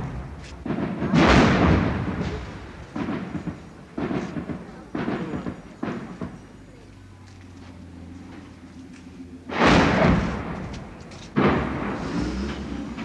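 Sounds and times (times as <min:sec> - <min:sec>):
loud blast with rumble: 0:00.0 - 0:06.2, 0:09.5 - 0:13.0.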